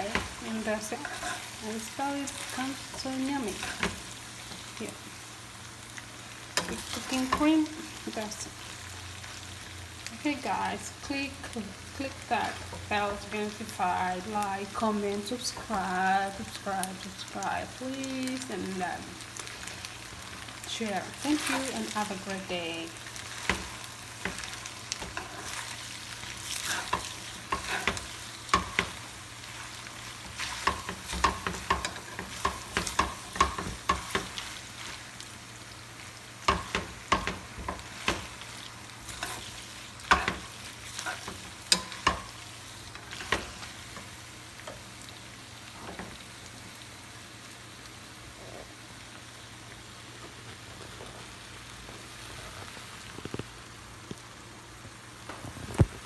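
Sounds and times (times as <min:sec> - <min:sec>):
utensil scraping a pan: 0:00.0 - 0:04.7, 0:23.3 - 0:35.0, 0:36.5 - 0:44.1
food sizzling in a frying pan: 0:00.0 - 0:56.0.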